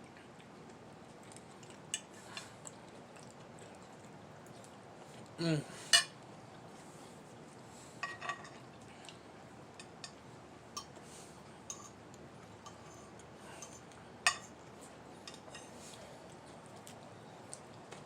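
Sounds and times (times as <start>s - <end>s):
cutlery clinking on plates: 5.9s - 6.2s, 8.0s - 8.6s, 11.7s - 12.0s, 12.7s - 14.6s.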